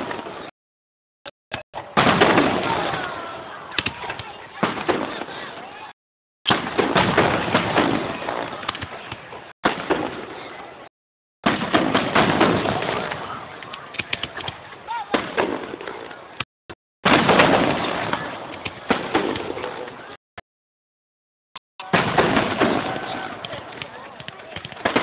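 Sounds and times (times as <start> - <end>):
fireworks bangs with crackle: 0.0 - 0.5, 1.8 - 5.7, 6.5 - 10.7, 11.4 - 20.2, 21.8 - 25.0.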